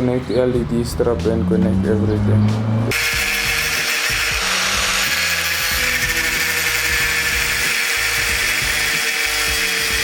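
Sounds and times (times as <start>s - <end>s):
background music with bass: 0.0s - 10.0s
power tool cutting metal: 2.9s - 10.0s.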